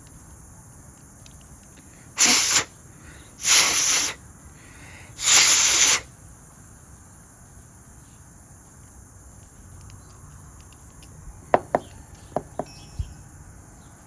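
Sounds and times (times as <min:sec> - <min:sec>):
clicks of small metal lock parts: 0:00.0 - 0:01.9, 0:08.8 - 0:13.0.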